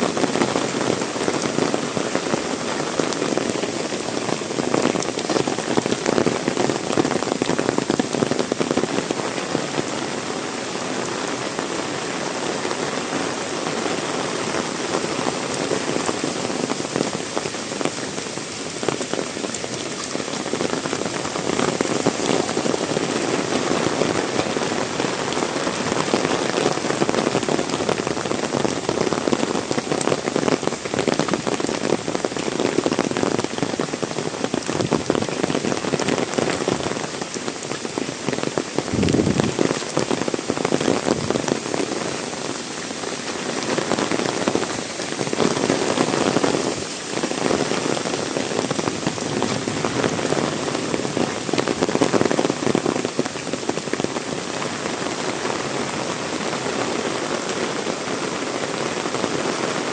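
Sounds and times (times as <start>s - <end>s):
heavy rain pouring: 0.0s - 59.9s.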